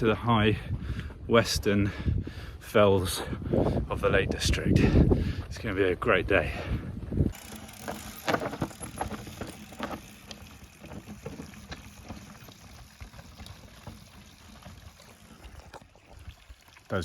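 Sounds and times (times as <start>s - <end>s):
wind rumble on microphone: 0.0s - 7.4s
footsteps on rocky path: 6.8s - 16.2s.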